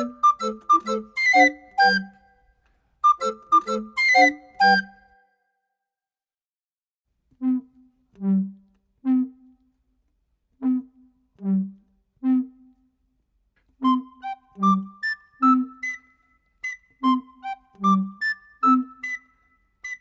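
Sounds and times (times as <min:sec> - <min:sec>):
higher held melody: 0:00.0 - 0:02.1, 0:03.0 - 0:05.0
slow low-pitched notes: 0:10.6 - 0:13.0.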